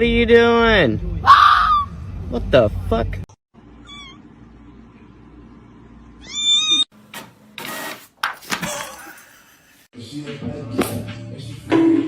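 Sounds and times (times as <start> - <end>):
cat meowing: 3.8 - 4.2.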